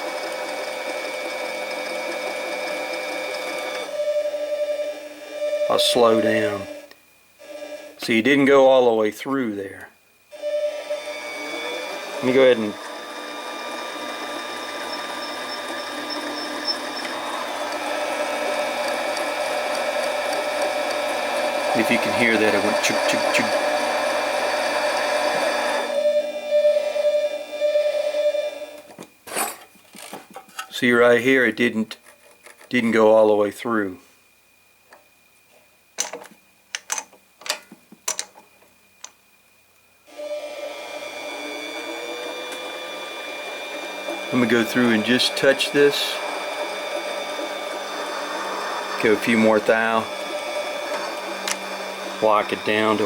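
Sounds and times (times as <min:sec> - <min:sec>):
lathe chugging on interrupted cut: 0:00.0 - 0:06.8, 0:10.4 - 0:28.8, 0:40.1 - 0:53.0
faint high whine: 0:03.3 - 0:36.7, 0:42.0 - 0:46.4, 0:48.4 - 0:53.0
sharp metallic clicks and knocks: 0:36.0 - 0:39.2.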